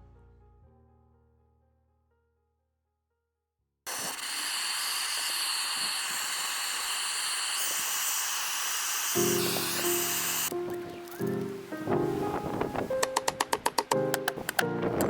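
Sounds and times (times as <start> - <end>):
compressed air hissing: 3.9 - 10.5.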